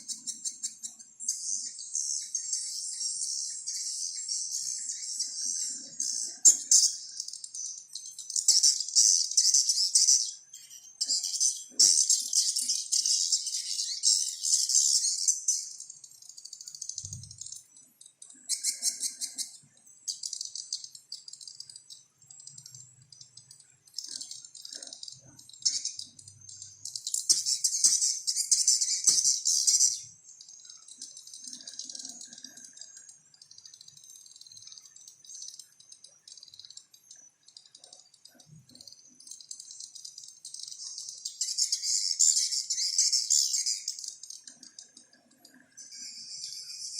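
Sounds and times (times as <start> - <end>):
high-pitched bird twittering: 0.0 - 46.9.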